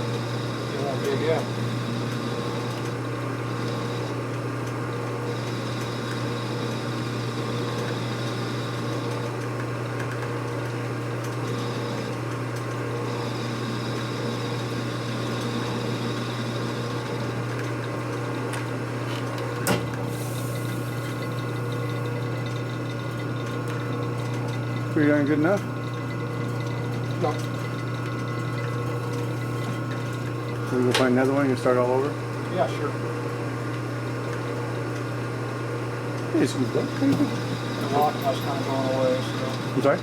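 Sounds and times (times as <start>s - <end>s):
machine tool humming: 0.0s - 4.4s, 19.2s - 40.0s.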